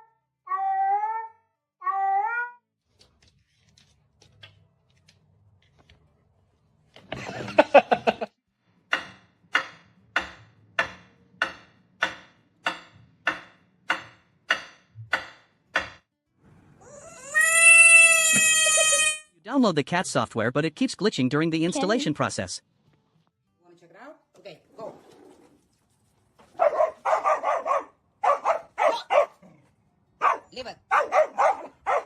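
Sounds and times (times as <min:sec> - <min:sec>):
cat meowing: 0:00.5 - 0:02.6.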